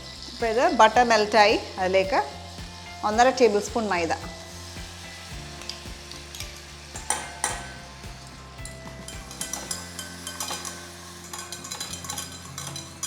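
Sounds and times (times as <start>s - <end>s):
faint sizzle: 0.0s - 13.0s
metal utensil scraping a saucepan: 5.6s - 13.0s.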